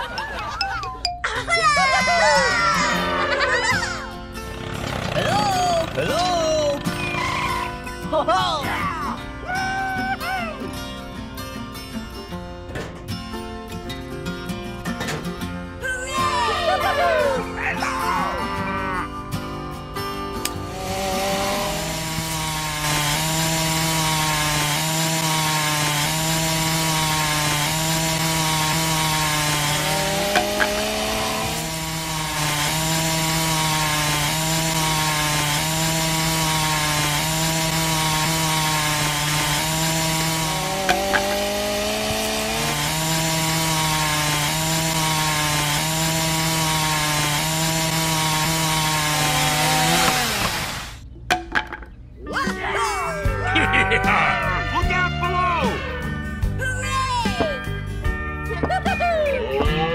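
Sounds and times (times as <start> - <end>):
small motor buzzing: 20.5 - 51.0.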